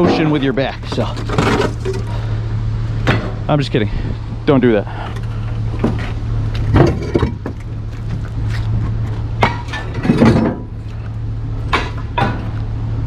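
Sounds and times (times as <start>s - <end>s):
scrap metal clanking: 0.0s - 2.3s, 4.9s - 11.1s
steady low hum: 0.0s - 13.0s.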